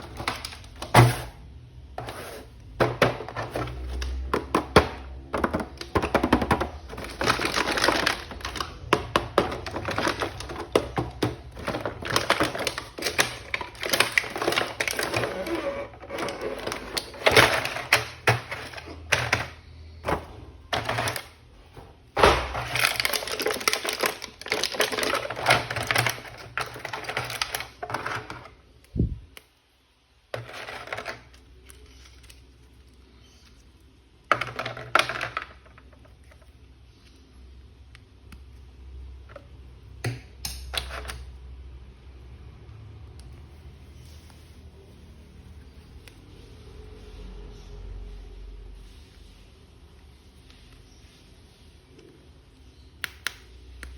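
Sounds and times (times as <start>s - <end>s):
plastic packaging crinkling: 0.0s - 1.2s, 2.9s - 29.1s.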